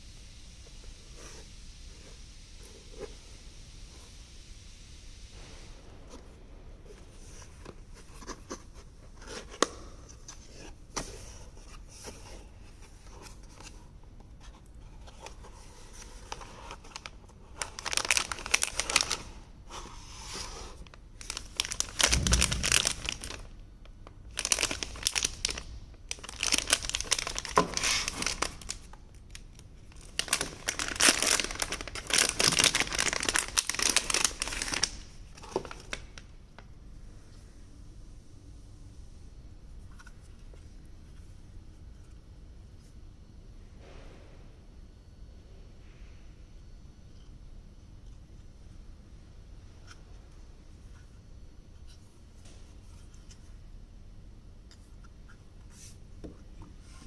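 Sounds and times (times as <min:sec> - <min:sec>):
packaging crinkling and tearing: 0:16.3 - 0:19.4, 0:20.8 - 0:36.2.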